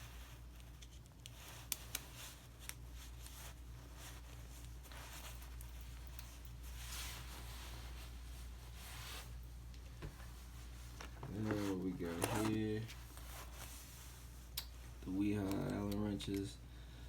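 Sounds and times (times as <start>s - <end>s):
steady low hum: 0.0s - 17.0s
tool bag rustling: 10.2s - 14.0s.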